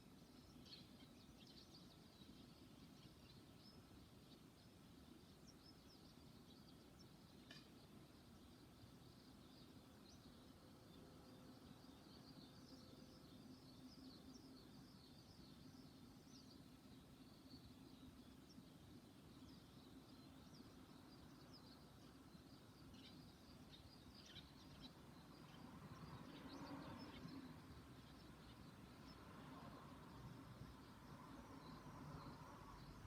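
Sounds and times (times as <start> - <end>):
small birds chirping: 0.0 - 33.0.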